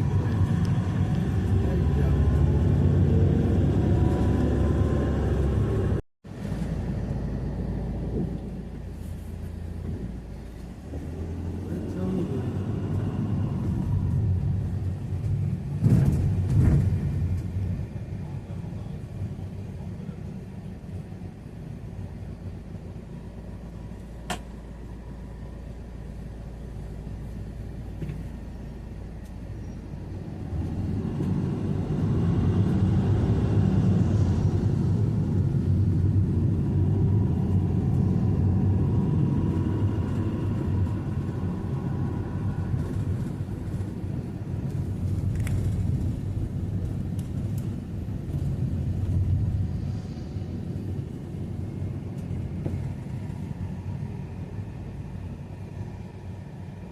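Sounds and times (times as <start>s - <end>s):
motor vehicle rumbling: 0.0s - 56.9s.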